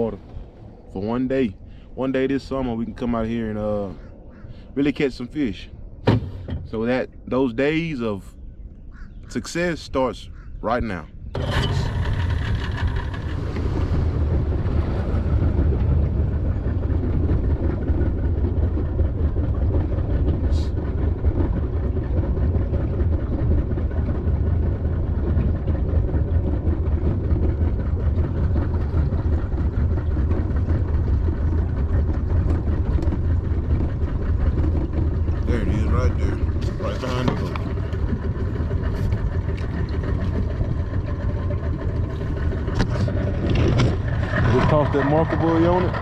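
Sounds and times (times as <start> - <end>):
water and hull noise: 0.0 - 46.0
outboard motor running: 10.7 - 46.0.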